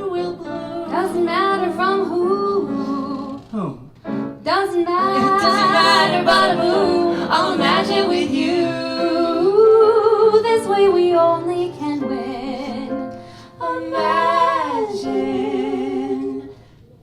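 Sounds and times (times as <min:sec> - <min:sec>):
light musical accompaniment: 0:00.0 - 0:17.0
woman singing with vibrato: 0:04.5 - 0:12.8.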